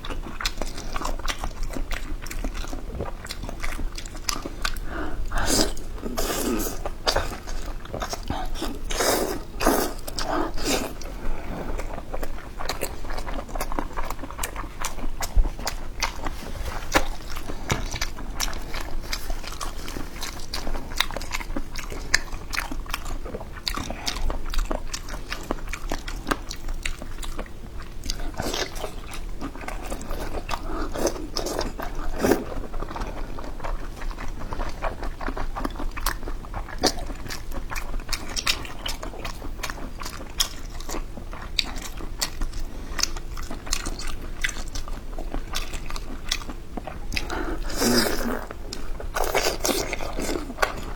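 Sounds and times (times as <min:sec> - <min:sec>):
person chewing crunchy food: 0:00.0 - 0:50.9.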